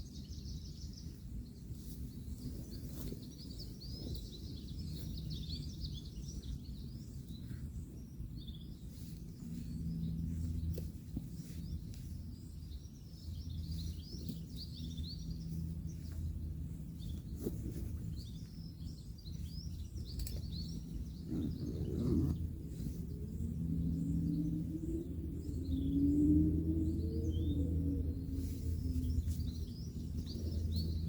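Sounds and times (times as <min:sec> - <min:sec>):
distant road traffic hum: 0:00.0 - 0:31.0
small birds chirping: 0:00.0 - 0:31.0
low rustle: 0:08.7 - 0:23.5
faint clicks: 0:20.1 - 0:20.5.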